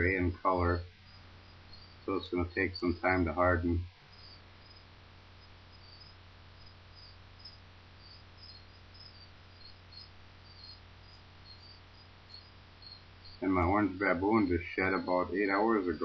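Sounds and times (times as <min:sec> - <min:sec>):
crickets chirping: 0:00.0 - 0:16.0
low electrical hum and hiss: 0:00.0 - 0:16.0.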